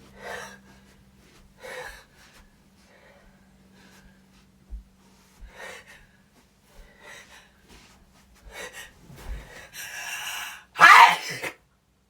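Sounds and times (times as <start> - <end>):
person gasping in-breaths: 8.5 - 11.5.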